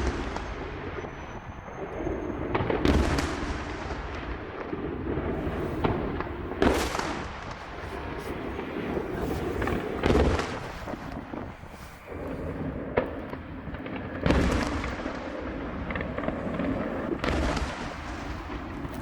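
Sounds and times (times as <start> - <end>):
fireworks booms and cracks: 0.0 - 19.0
low rolling rumble: 4.9 - 19.0.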